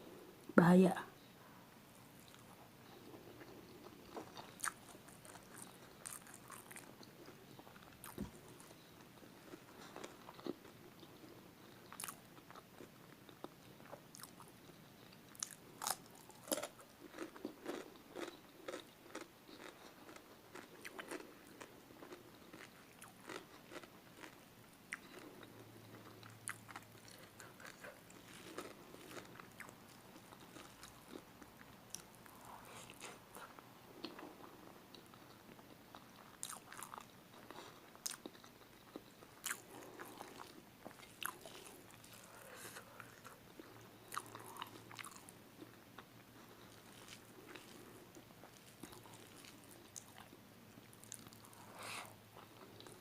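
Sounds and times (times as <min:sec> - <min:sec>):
biting and chewing crunches: 0:02.2 - 0:51.7.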